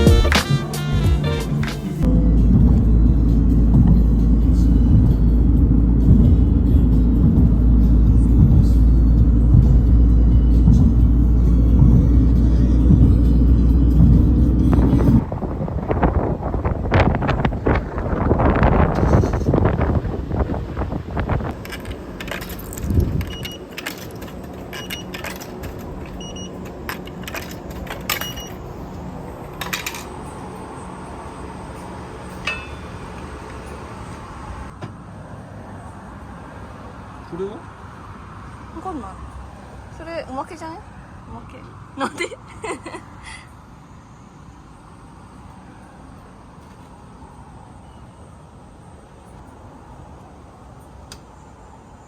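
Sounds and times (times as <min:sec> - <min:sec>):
music playing: 0:00.0 - 0:15.2
car driving rumble: 0:00.0 - 0:43.4
objects clicking and clinking: 0:21.5 - 0:28.6.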